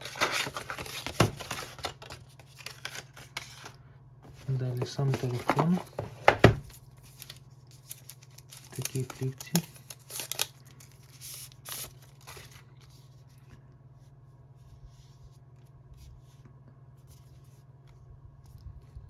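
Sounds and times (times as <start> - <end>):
plastic film rustling: 0.0 - 3.7, 4.3 - 12.6
low electrical hum: 0.0 - 19.0.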